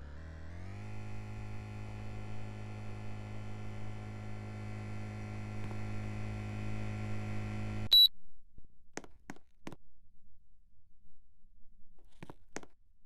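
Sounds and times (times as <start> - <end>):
short high beep: 7.9 - 8.1.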